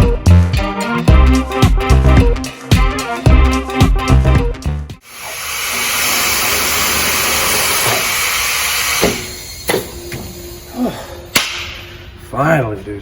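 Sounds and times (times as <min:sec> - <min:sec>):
compressed air hissing into tire: 0:05.0 - 0:10.0.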